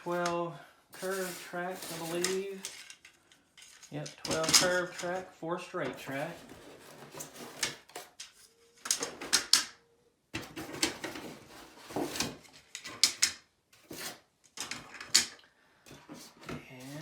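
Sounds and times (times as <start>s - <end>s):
toy train track handled: 1.0s - 5.3s, 14.5s - 15.4s.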